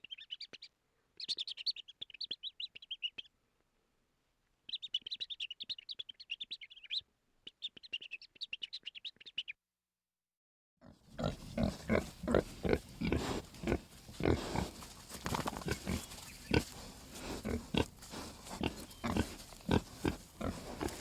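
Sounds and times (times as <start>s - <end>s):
piglets grunting: 10.8s - 14.8s, 15.4s - 21.0s.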